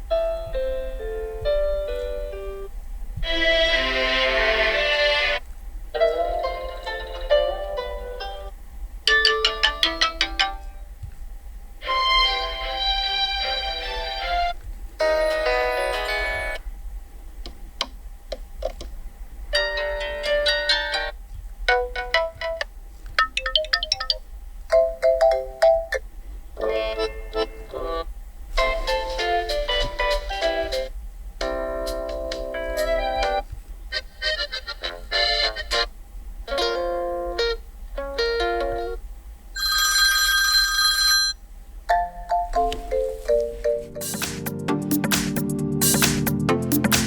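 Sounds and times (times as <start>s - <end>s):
electronic ringtone melody: 15.1s - 16.6s, 39.6s - 41.4s, 42.0s - 44.5s
bright steady ringing tone: 39.6s - 41.4s
phone ringtone snippets: 39.6s - 41.4s.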